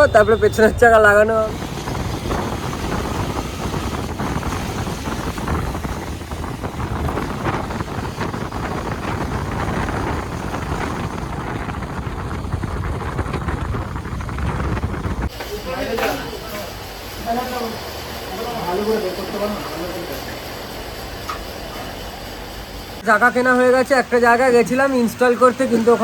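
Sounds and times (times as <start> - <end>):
wind buffeting microphone: 0.0 - 15.4
motorcycle engine and road rumble: 0.0 - 15.5.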